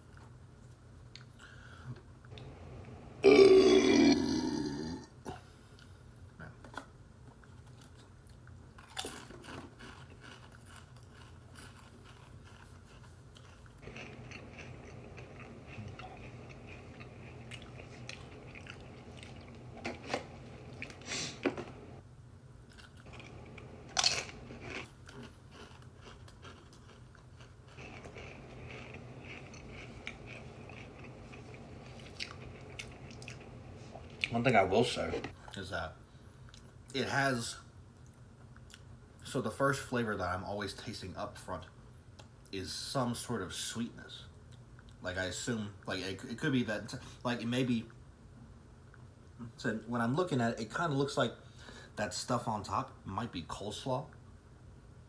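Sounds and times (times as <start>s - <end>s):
loud burp: 3.2s - 5.2s
person chewing crisps: 6.6s - 21.8s, 22.6s - 34.4s.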